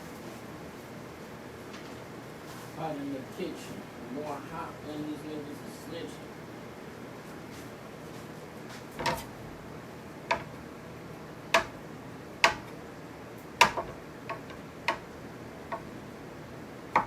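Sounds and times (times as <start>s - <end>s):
knife chopping on cutting board: 11.6s - 11.8s, 12.4s - 12.7s, 13.6s - 15.0s.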